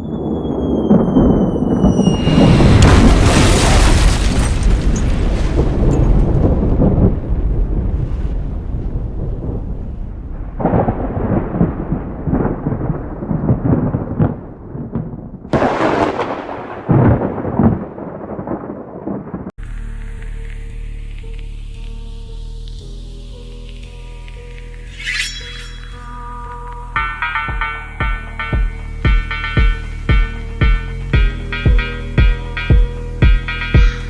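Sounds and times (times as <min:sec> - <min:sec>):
plane crash with heavy rumbling: 0:00.0 - 0:14.3
rumbling bursts: 0:00.0 - 0:21.7.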